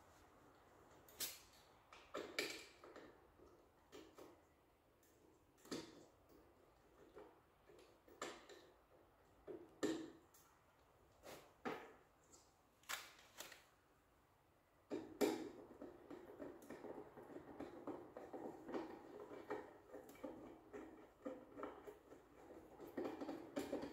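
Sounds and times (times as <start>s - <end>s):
handling clicks and knocks: 14.8s - 23.9s
rustling and clatter: 15.5s - 23.9s.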